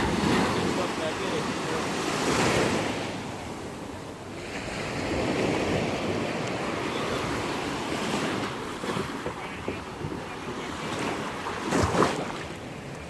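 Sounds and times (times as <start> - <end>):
sea surf washing onto shore: 0.0 - 13.0.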